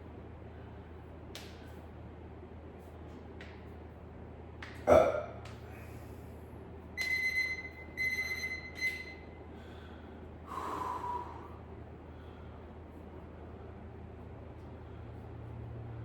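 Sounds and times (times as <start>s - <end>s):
man breathing heavily: 5.0s - 6.5s, 9.5s - 13.8s.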